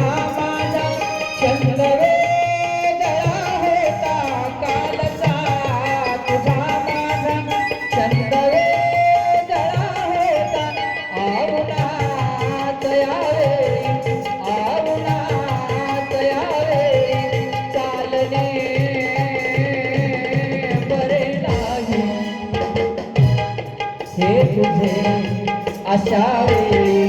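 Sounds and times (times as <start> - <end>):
hand drums rhythm: 0.0 - 27.0.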